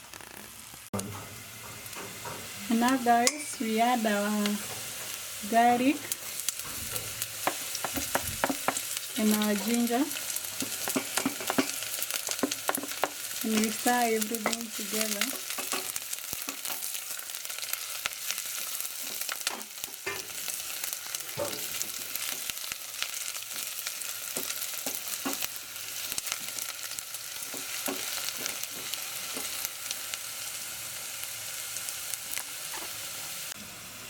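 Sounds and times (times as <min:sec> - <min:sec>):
vegetables sizzling in hot oil: 0:00.0 - 0:34.0
stirring scrapes and knocks: 0:06.2 - 0:09.9.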